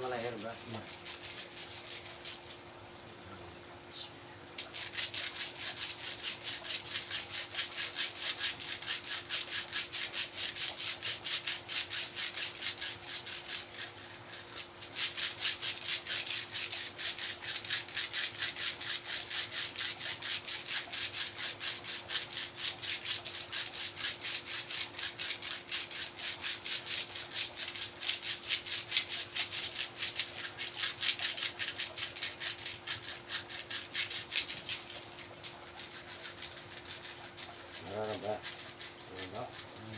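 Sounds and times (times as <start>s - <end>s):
hands rubbing body: 23.3s - 39.9s.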